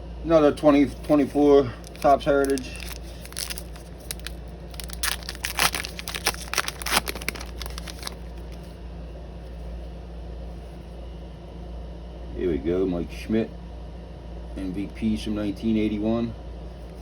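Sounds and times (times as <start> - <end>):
low steady hum: 0.0 - 17.0
wrapper tearing and crinkling: 1.0 - 8.7.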